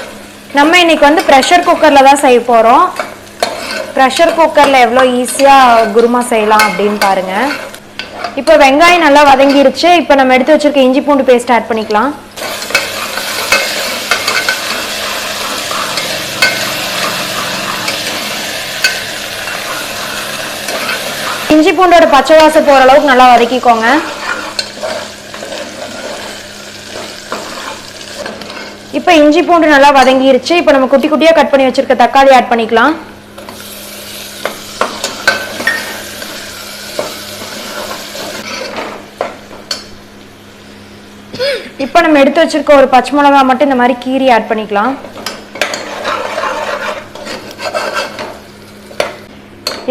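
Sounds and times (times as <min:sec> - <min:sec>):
spatula clinking and scraping pot: 0:02.9 - 0:08.6, 0:12.4 - 0:21.5, 0:22.1 - 0:28.8, 0:45.1 - 0:49.8
onions sizzling in hot oil: 0:12.3 - 0:30.1, 0:33.4 - 0:39.8.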